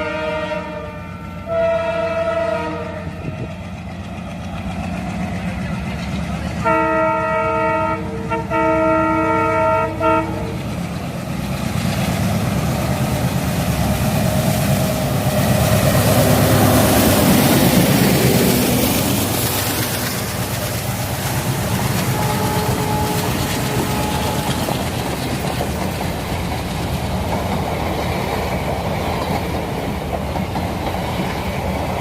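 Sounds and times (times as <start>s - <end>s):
locomotive horn chord: 0.0s - 3.3s, 6.6s - 10.6s, 22.0s - 24.8s
diesel engine chugging: 3.0s - 8.7s, 9.9s - 32.0s.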